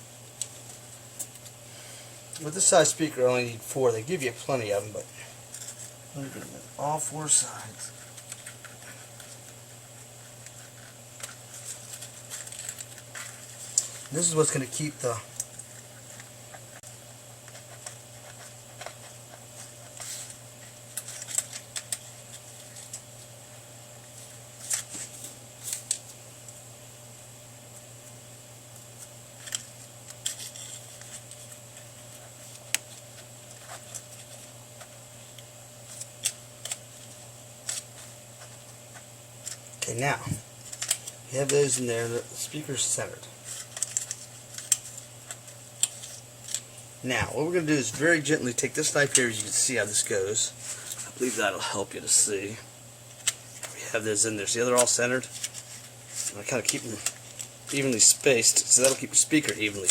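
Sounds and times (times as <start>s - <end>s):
steady low hum: 0.0s - 59.9s
small clicks and rustles of hands: 0.3s - 1.6s, 7.8s - 23.3s, 24.6s - 26.6s, 28.7s - 39.8s, 40.6s - 41.2s, 43.4s - 46.7s.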